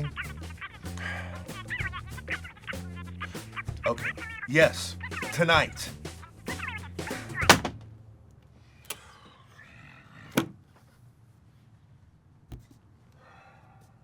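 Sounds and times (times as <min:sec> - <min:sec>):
faint muffled voices: 0:00.0 - 0:07.6
low thud: 0:07.4 - 0:07.9.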